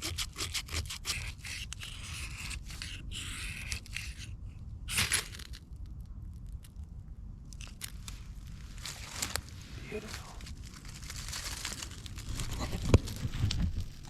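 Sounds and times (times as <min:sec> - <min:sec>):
bark tearing and scraping: 0:00.0 - 0:05.6, 0:08.9 - 0:14.0.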